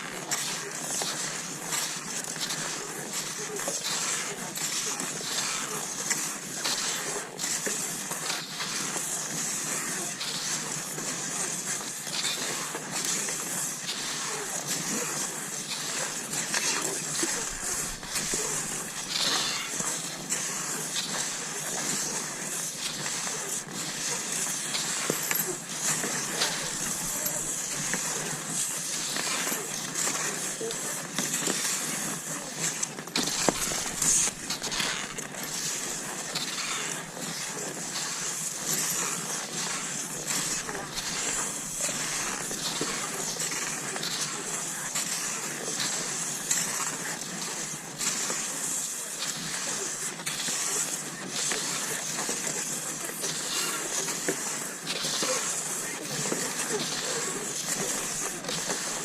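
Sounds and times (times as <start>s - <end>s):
skis sliding over snow: 0.0s - 59.0s.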